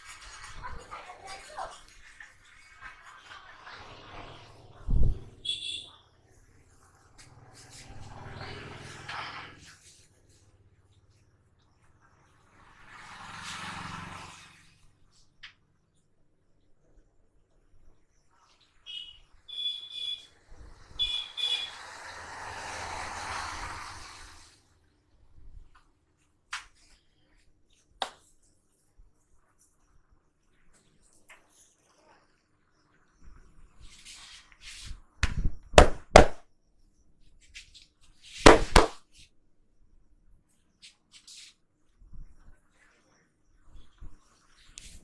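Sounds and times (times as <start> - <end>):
vehicle passing by: 3.5 - 5.5, 6.5 - 11.2, 12.2 - 15.0, 20.6 - 24.8
short high-pitched beeps: 18.9 - 20.3
hands slapping head: 26.5 - 26.8, 28.0 - 28.3, 35.2 - 36.4, 38.4 - 39.0
soft rubbing rustle: 33.7 - 35.2, 40.7 - 45.0.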